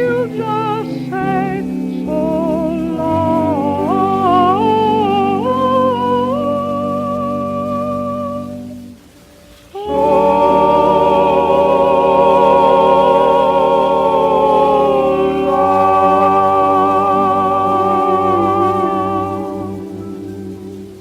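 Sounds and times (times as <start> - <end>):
vocal harmony group singing: 0.0 - 9.0, 9.7 - 21.0.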